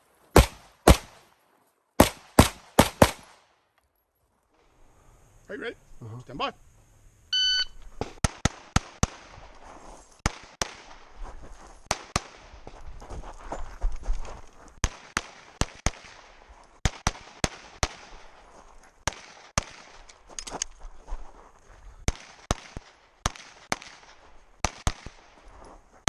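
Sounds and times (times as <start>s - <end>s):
pistol shots: 0.3s - 1.3s, 2.0s - 3.5s.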